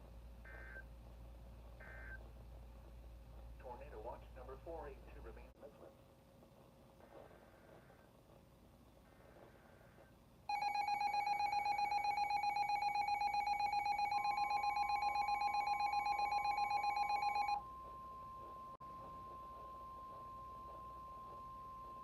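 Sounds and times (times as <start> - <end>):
steady single-pitch alarm tone: 1.8 - 2.2, 10.5 - 22.0.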